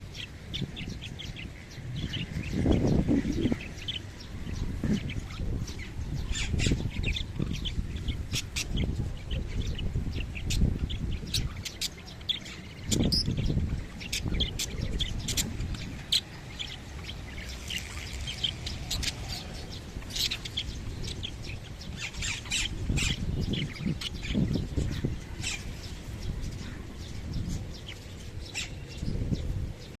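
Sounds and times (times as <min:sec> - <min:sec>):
parrots chirping and squawking: 0:10.4 - 0:25.9
low rumbling noise: 0:12.6 - 0:30.0.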